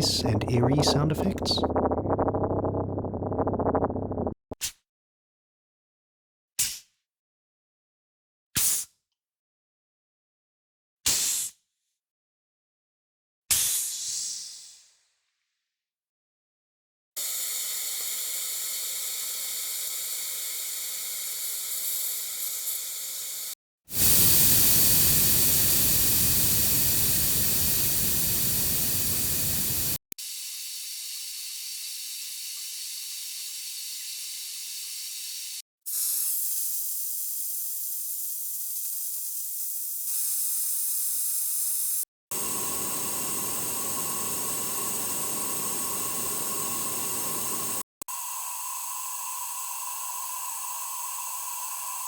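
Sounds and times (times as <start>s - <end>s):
gas hissing: 0.0s - 4.3s, 23.9s - 30.0s, 42.3s - 47.8s.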